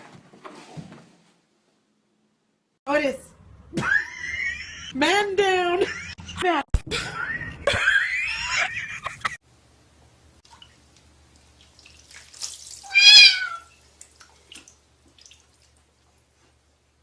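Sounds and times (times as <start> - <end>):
cat meowing: 12.8 - 13.7.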